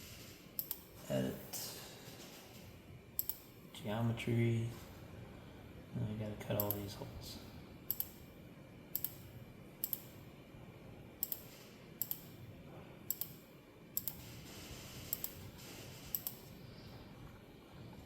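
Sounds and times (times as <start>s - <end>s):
computer mouse clicking: 0.6s - 0.9s, 3.2s - 3.5s, 6.6s - 6.9s, 7.9s - 8.2s, 8.9s - 10.2s, 11.2s - 12.4s, 13.1s - 13.4s, 14.0s - 14.3s, 15.0s - 15.5s, 16.1s - 16.6s.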